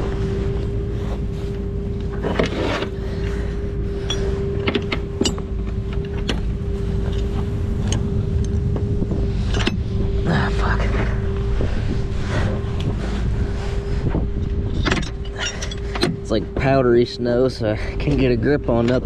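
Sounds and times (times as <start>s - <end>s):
tow truck engine whining: 0.0s - 19.0s
chain clinking and knocking: 4.0s - 8.6s, 14.6s - 16.3s.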